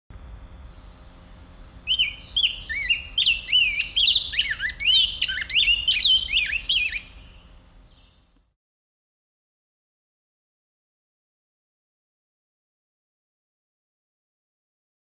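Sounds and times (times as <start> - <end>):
songbird warbling: 0.8 - 8.3.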